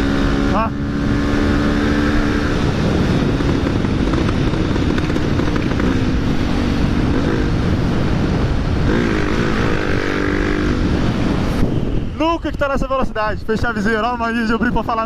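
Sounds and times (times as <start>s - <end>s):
motorcycle engine running: 0.0s - 11.5s
wind rush on microphone: 0.0s - 15.0s.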